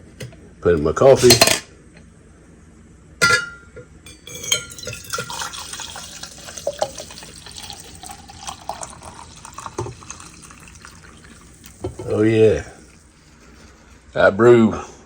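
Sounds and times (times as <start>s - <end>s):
cup clinking: 3.2s - 13.0s
liquid pouring into cup: 4.3s - 13.2s.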